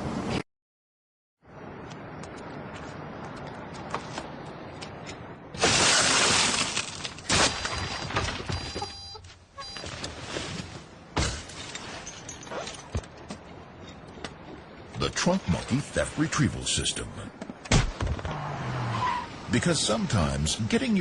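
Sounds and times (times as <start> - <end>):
glass shattering: 5.6 - 8.9, 11.2 - 13.0
sharp knocks and thuds: 17.4 - 18.3.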